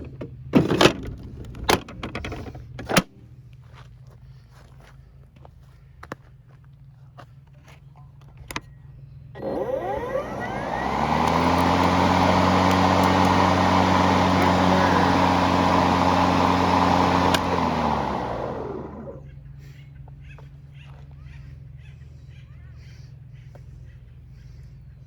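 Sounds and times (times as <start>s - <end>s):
electric lawn mower running: 9.4s - 19.2s.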